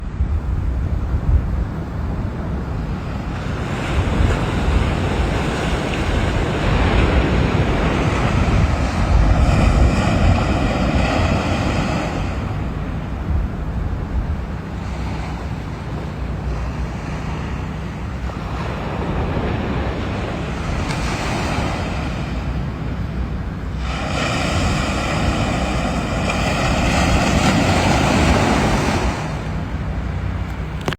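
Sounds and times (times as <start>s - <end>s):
surf breaking on beach: 0.0s - 30.9s
wind buffeting microphone: 0.0s - 30.9s.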